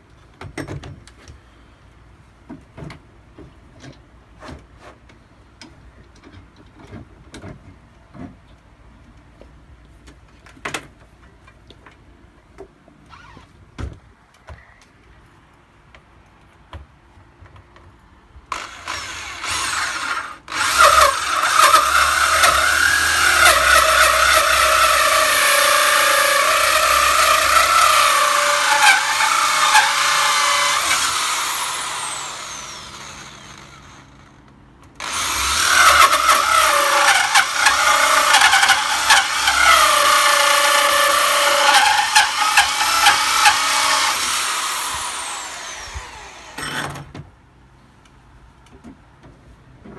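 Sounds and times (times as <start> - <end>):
electric power drill whining: 18.5 - 34.4, 35.0 - 47.0.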